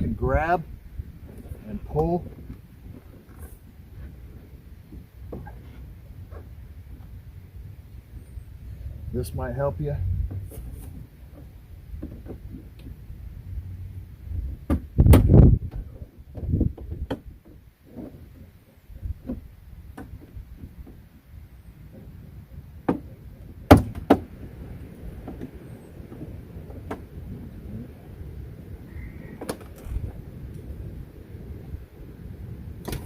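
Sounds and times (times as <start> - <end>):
knocks and thuds on truck door: 14.5 - 17.6, 22.8 - 24.3.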